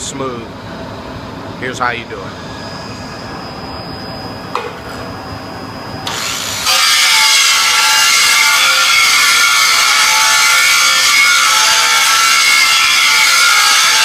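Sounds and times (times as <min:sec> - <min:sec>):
grinder grinding metal: 0:06.0 - 0:14.0.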